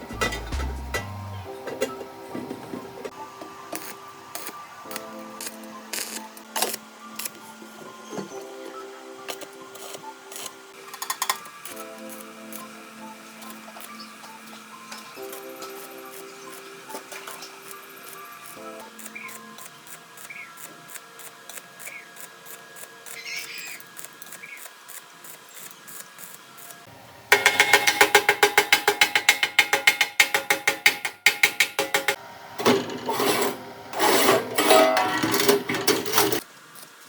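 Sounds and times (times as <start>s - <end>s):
hand tool rasping on metal: 27.3s - 32.2s, 33.1s - 36.4s.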